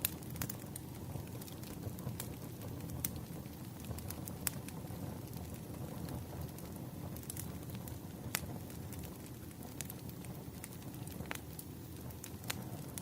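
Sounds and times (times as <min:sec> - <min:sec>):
campfire crackling and popping: 0:00.0 - 0:13.0.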